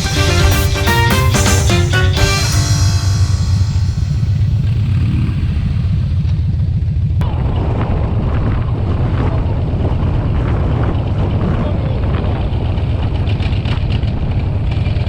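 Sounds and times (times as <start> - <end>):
road noise: 0.0 - 7.3
motorcycle engine rumble: 3.0 - 7.3.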